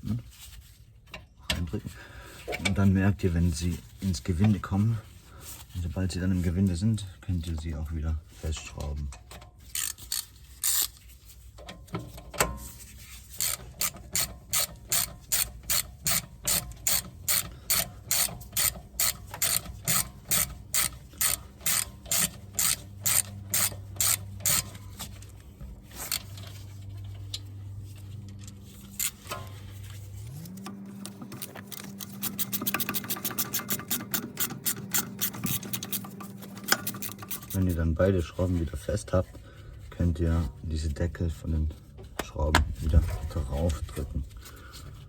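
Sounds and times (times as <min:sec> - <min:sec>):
ratchet wrench clicking: 0:09.7 - 0:11.0, 0:13.3 - 0:25.2, 0:26.0 - 0:26.6, 0:28.4 - 0:29.6, 0:30.4 - 0:37.8.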